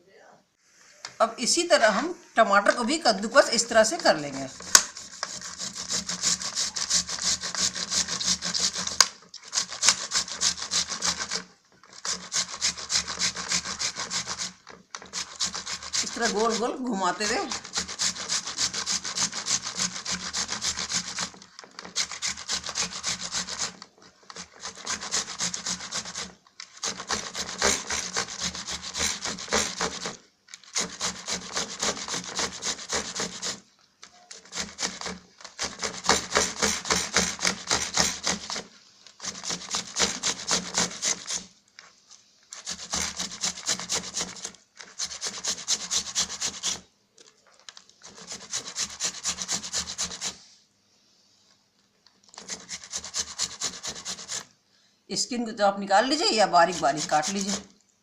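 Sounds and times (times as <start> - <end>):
tomato scraping on grater: 2.8 - 41.6, 42.5 - 46.9, 48.0 - 50.4, 52.3 - 54.5, 56.1 - 57.8.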